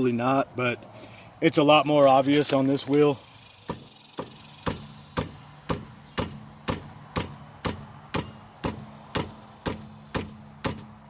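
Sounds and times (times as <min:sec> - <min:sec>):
metallic clicking of loose wheel: 0:03.0 - 0:11.0.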